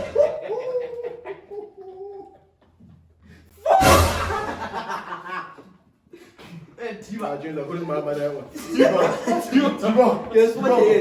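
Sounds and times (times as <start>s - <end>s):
young men laughing: 0.0s - 2.6s, 3.6s - 6.7s, 8.5s - 11.0s.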